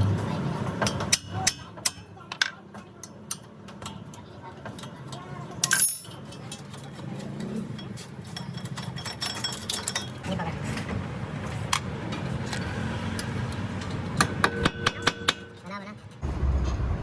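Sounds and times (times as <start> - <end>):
metallic clinks of tools: 5.6 - 6.9.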